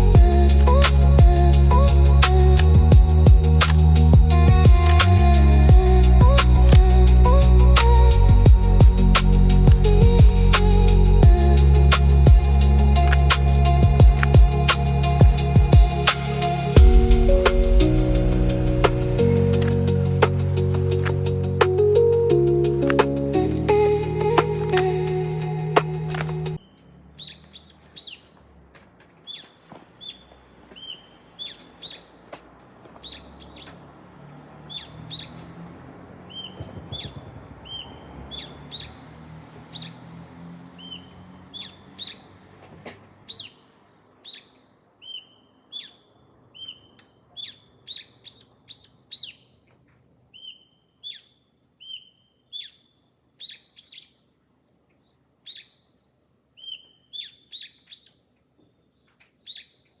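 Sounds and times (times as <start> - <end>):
low rumble: 0.0 - 26.6
small birds chirping: 19.4 - 28.4, 29.2 - 32.2, 33.0 - 33.9, 34.6 - 42.5, 43.2 - 54.3, 55.0 - 58.2.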